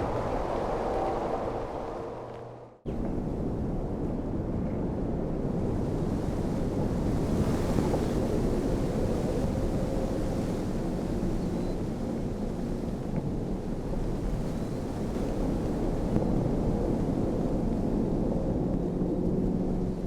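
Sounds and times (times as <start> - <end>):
wind blowing with deep rumble: 0.0 - 20.0.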